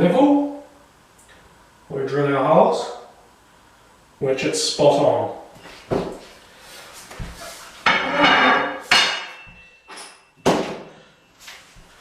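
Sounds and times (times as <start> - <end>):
tools scraping and clattering: 7.3 - 10.4
faint metallic ring: 8.2 - 10.4.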